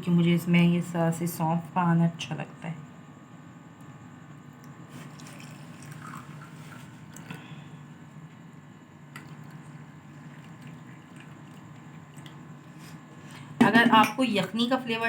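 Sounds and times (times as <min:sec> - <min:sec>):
steady low hum: 0:00.0 - 0:15.0
liquid trickling into cups: 0:05.0 - 0:07.5, 0:09.1 - 0:15.0.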